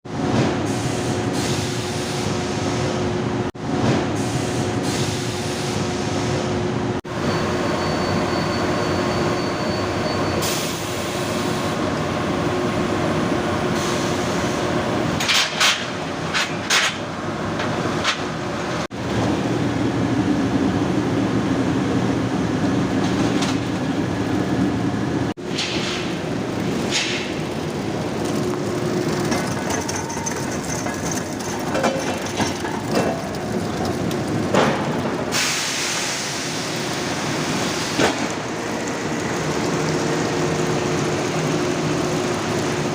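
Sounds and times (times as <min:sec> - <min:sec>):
industrial machinery din: 0:11.8 - 0:42.9.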